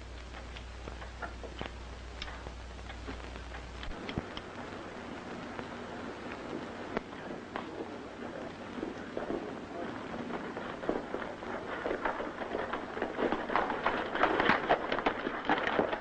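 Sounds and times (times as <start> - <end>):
horses' hoofbeats clattering: 6.0 - 16.0.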